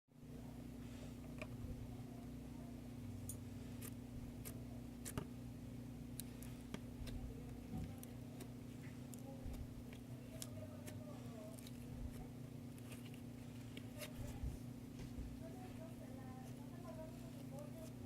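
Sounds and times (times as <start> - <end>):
steady low hum: 0.2 - 18.0.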